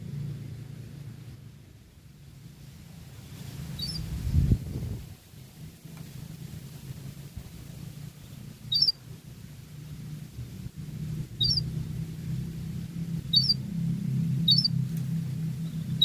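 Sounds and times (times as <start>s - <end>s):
steady low hum: 0.0s - 16.0s
canary chirping: 3.7s - 4.1s, 8.2s - 9.0s, 11.3s - 11.8s, 13.2s - 13.7s, 14.3s - 14.8s.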